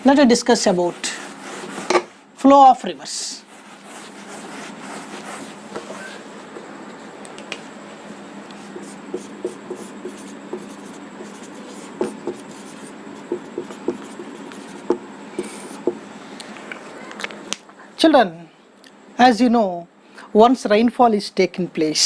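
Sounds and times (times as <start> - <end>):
pen scratching strokes: 0.5 - 2.1, 3.4 - 5.8, 8.6 - 16.0.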